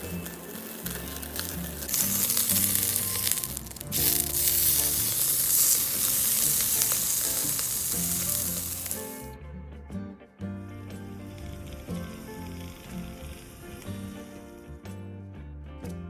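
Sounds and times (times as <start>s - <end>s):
meat sizzling on a grill: 0.0s - 9.3s, 10.9s - 14.7s
background music: 0.0s - 16.0s.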